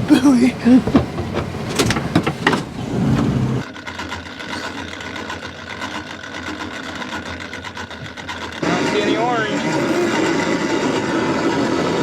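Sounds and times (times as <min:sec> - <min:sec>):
boat motor running: 0:00.0 - 0:12.0
sharp knocks and clatter: 0:00.8 - 0:08.6.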